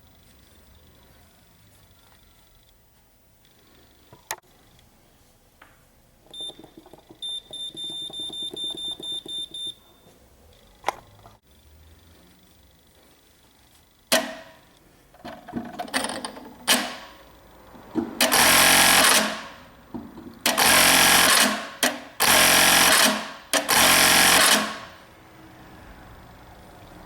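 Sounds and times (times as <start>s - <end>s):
sewing machine stitching: 18.2s - 19.6s, 20.4s - 25.0s.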